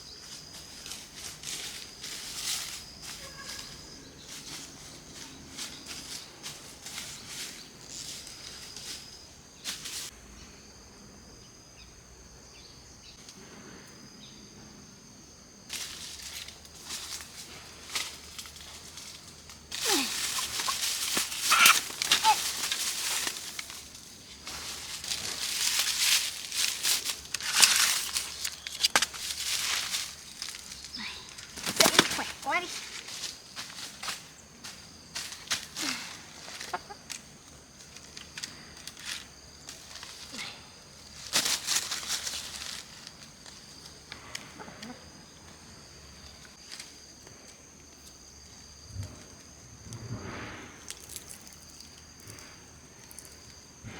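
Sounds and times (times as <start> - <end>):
rustling and scuffling: 0.0 - 10.2, 15.7 - 44.6
wings flapping: 19.8 - 23.8, 31.4 - 32.7
rooster cries: 21.4 - 22.4
chickens clucking: 36.5 - 37.2.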